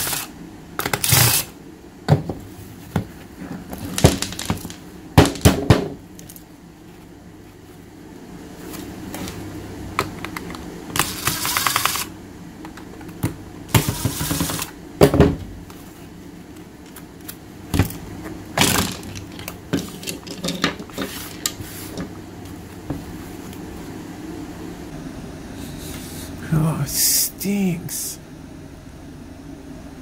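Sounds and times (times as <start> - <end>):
screws and plastic parts clattering: 18.6 - 22.1.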